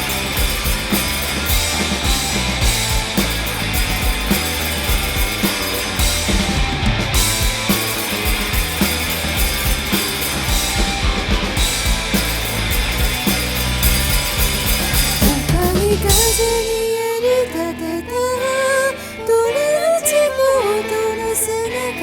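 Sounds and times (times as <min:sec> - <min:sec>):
drum kit steady beat: 0:00.0 - 0:17.1
rock band playing: 0:00.0 - 0:17.4.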